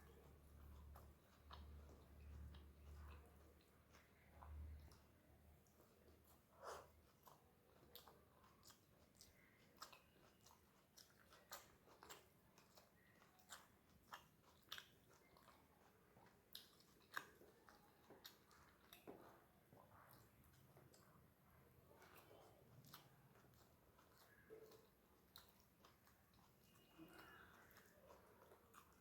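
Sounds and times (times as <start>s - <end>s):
close-up chewing: 0.0s - 29.0s.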